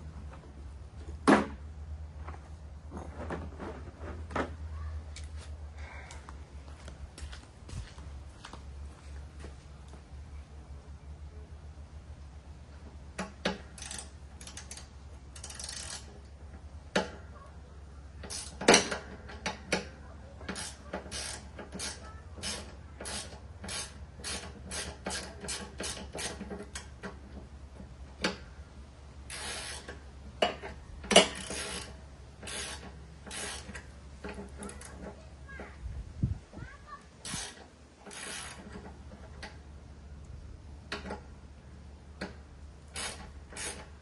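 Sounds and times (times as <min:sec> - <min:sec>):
ratchet wrench clicking: 0:13.7 - 0:16.1, 0:18.2 - 0:18.9, 0:20.5 - 0:26.9, 0:29.3 - 0:29.9, 0:31.1 - 0:33.8, 0:37.2 - 0:38.7, 0:42.9 - 0:44.0.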